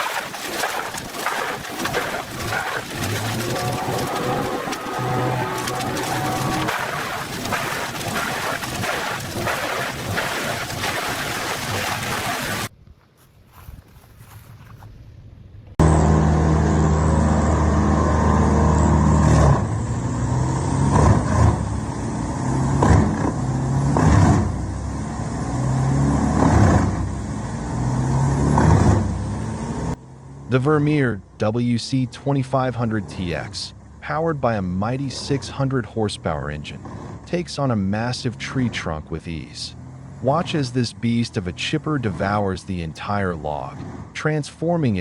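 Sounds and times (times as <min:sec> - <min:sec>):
wood cracking in chipper: 0:00.0 - 0:12.7
wood chipper engine running: 0:02.4 - 0:10.4.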